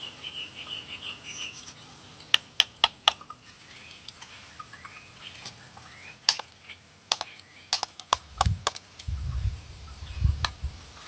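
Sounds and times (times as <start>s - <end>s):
small birds chirping: 0.0s - 11.0s
sharp taps: 7.1s - 8.8s.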